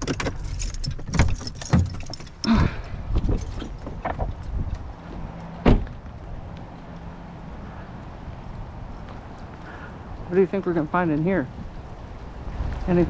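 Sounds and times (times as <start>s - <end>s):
truck door clicks and knocks: 0.0s - 6.2s
loud thump: 5.6s - 6.0s.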